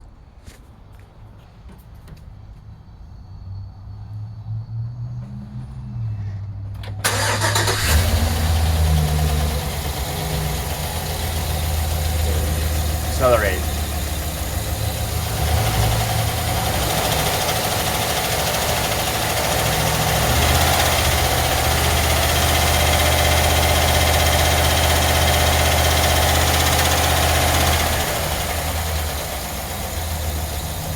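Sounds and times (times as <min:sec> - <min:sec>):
van engine idling: 0:06.8 - 0:30.9
higher-pitched engine tone: 0:07.1 - 0:30.9.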